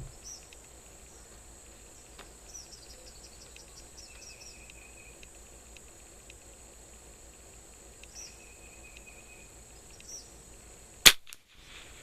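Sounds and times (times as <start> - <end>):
crickets chirring: 0.0 - 12.0
faint click: 2.9 - 6.5, 8.9 - 9.2, 9.9 - 10.2
rifle shot crack: 11.0 - 12.0.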